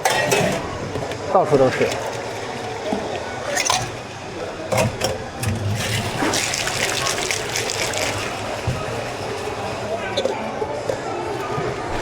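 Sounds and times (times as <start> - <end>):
liquid pouring into a cup: 5.8 - 10.1.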